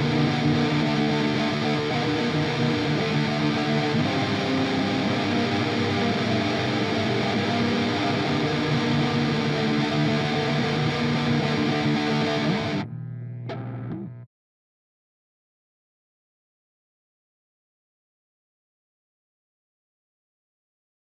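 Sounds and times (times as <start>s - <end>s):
distorted electric guitar riff: 0.0s - 14.3s.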